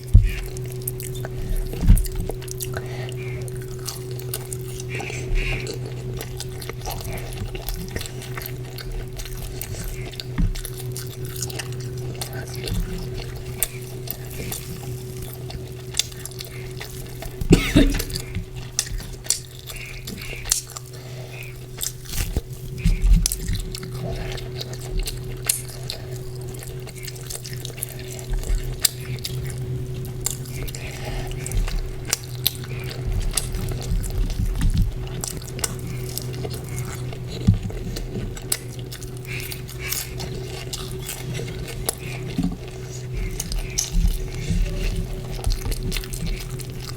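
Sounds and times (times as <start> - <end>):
chewing and wet clicks: 0.0 - 46.9
steady low hum: 0.0 - 46.9.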